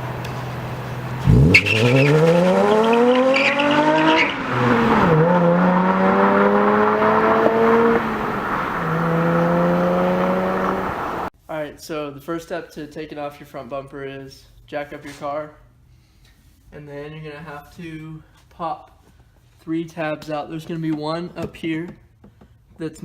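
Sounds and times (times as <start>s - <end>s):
car engine idling and revving: 0.0s - 11.3s.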